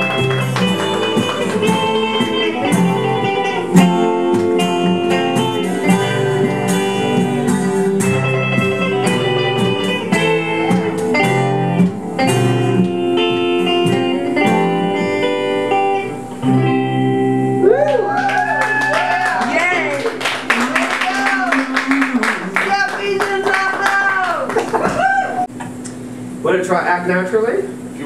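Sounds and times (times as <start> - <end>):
picked guitar lead line: 0.0 - 26.4
strummed guitar chords: 0.0 - 26.4.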